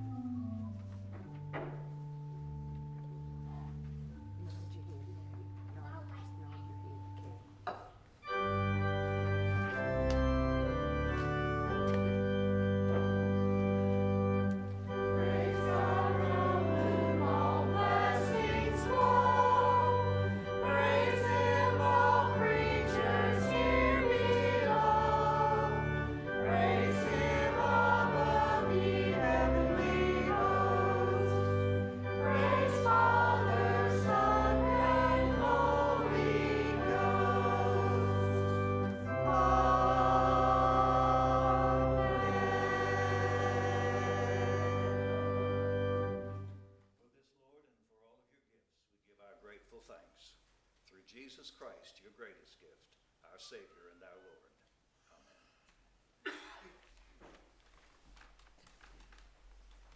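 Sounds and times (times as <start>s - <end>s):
organ playing sustained chords: 0.0s - 7.6s, 8.2s - 46.8s
choir singing: 14.9s - 46.5s.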